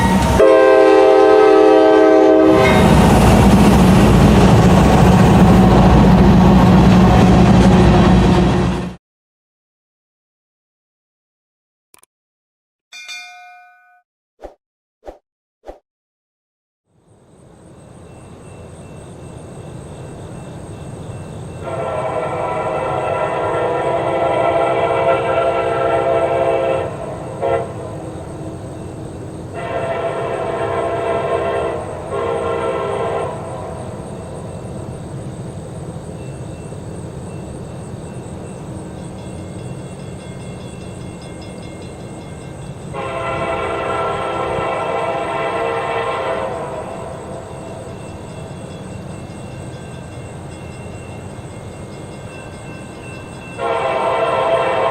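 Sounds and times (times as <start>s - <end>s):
locomotive air horn: 0.0s - 3.0s, 21.6s - 28.2s, 29.5s - 33.8s, 42.9s - 47.7s, 53.6s - 54.9s
diesel locomotive rumble: 0.0s - 9.0s, 17.1s - 54.9s
metallic dings: 12.9s - 14.0s.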